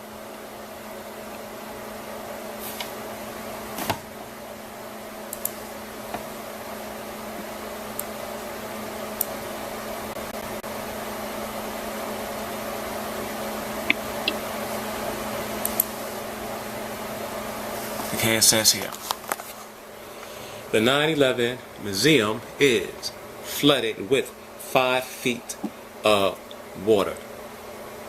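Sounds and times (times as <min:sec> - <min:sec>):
appliance humming: 0:00.0 - 0:28.0
clicks: 0:05.3 - 0:06.3, 0:15.6 - 0:16.0.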